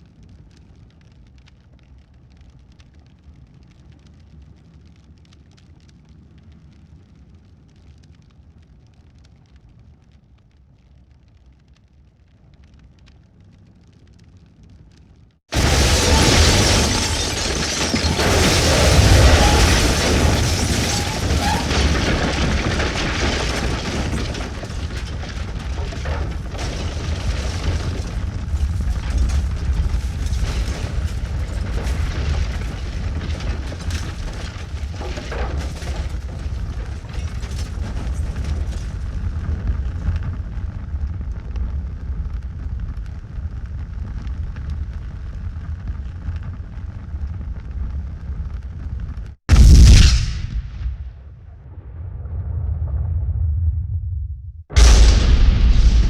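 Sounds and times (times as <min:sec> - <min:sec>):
low rumble with crackles: 0:00.0 - 0:56.0
explosion blast: 0:15.5 - 0:40.3, 0:49.5 - 0:56.0.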